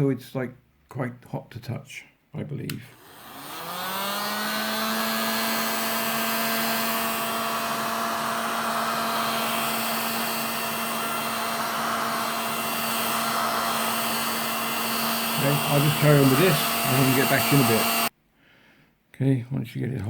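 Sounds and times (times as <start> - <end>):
heat gun running: 2.9 - 18.1.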